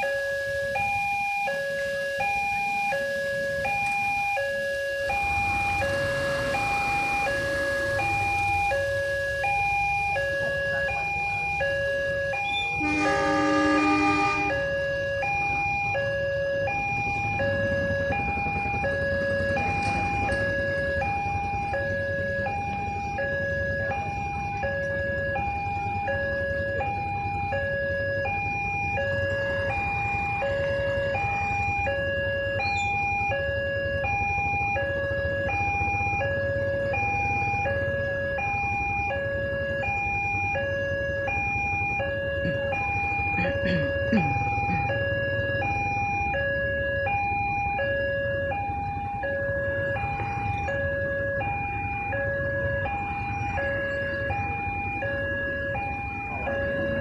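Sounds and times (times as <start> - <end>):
horn blaring: 0.0 - 25.2, 26.4 - 33.0
two-tone crossing alarm: 0.0 - 57.0
low engine rumble: 3.3 - 57.0.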